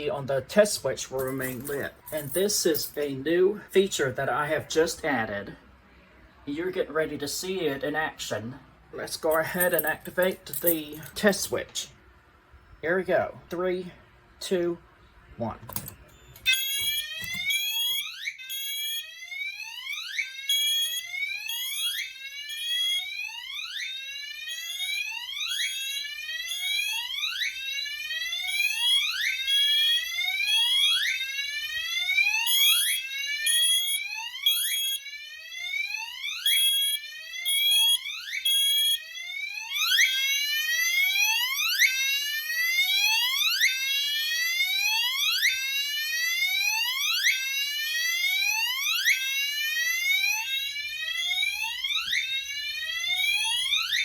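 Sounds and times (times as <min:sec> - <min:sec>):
fire alarm sweeping tone: 0:16.1 - 0:54.0.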